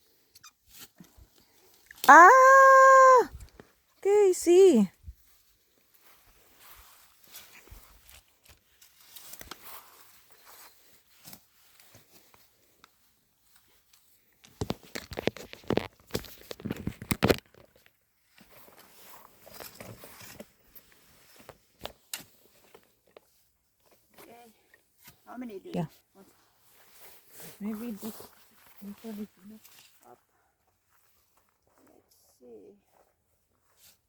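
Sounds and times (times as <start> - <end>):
plants rustling and crackling: 26.4 - 30.2.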